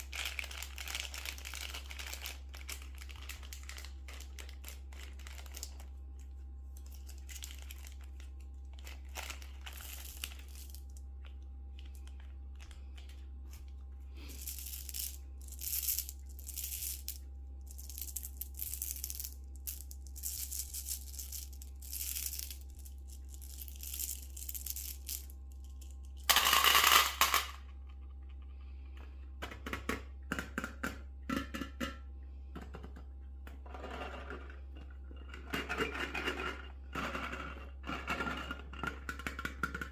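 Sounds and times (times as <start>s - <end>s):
candy packaging crinkling and tearing: 0.0s - 27.4s
steady low hum: 0.0s - 39.9s
candy dropping into metal bowl: 6.8s - 11.0s, 14.2s - 27.8s.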